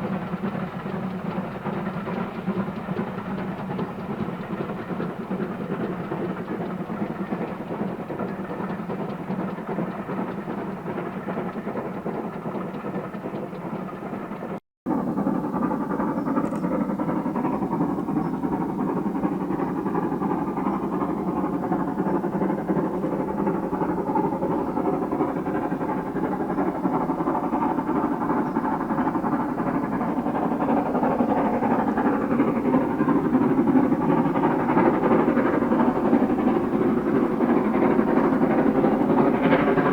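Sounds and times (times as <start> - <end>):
steam locomotive running: 0.0 - 39.9.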